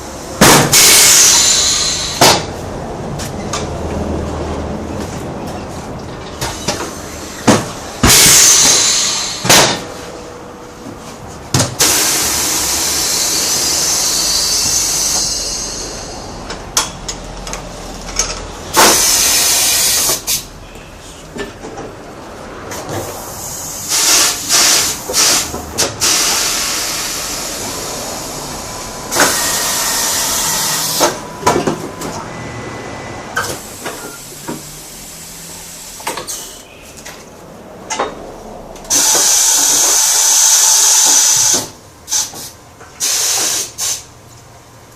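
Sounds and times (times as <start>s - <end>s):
compressed air hissing: 0.7s - 2.5s, 8.0s - 9.7s, 11.8s - 16.4s, 18.7s - 20.5s, 23.0s - 31.2s, 38.9s - 44.1s.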